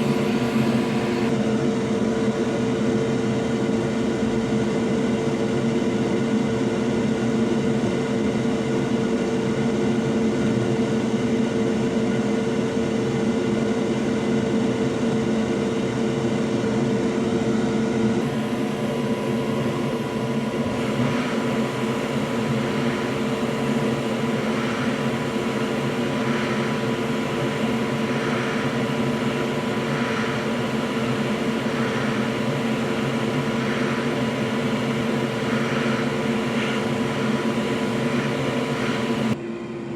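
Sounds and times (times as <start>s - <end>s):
machine hum with whine: 0.0s - 39.9s
faint pulsing: 18.2s - 39.4s
hiss: 20.8s - 39.0s.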